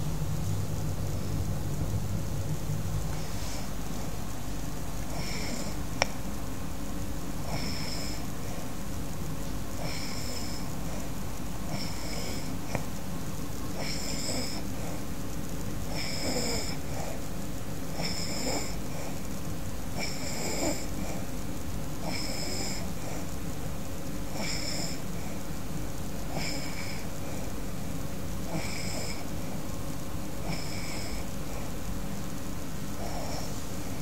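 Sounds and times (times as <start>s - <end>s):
woman snoring: 5.1s - 5.8s, 7.4s - 8.4s, 9.8s - 10.7s, 11.7s - 12.7s, 13.7s - 14.8s, 15.9s - 17.0s, 17.9s - 19.0s, 20.0s - 21.3s, 22.0s - 23.1s, 24.3s - 25.0s, 26.3s - 27.1s, 28.4s - 29.3s, 30.4s - 31.7s, 33.0s - 34.0s.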